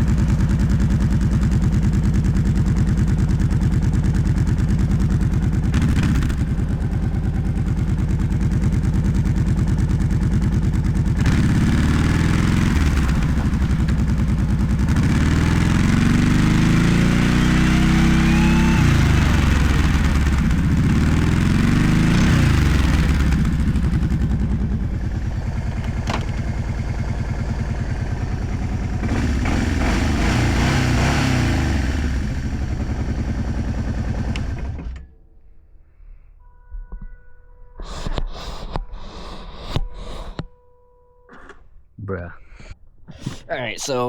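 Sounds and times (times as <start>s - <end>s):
atv engine revving: 0.0s - 35.0s.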